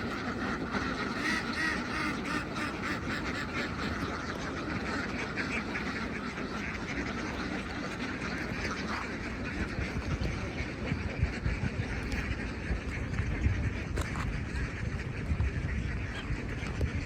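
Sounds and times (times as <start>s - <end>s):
ducks quacking: 0.0s - 17.0s
steady low rumble: 5.3s - 17.0s.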